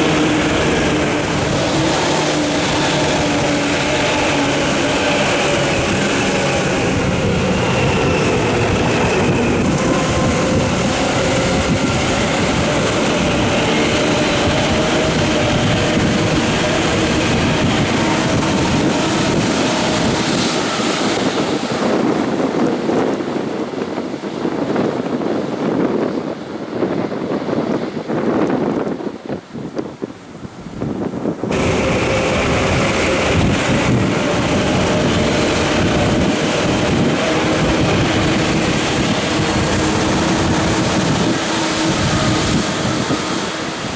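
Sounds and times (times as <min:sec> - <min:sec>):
train running gear rumble: 0:00.0 - 0:29.8, 0:31.0 - 0:43.9
electric train motors whining: 0:31.5 - 0:43.9.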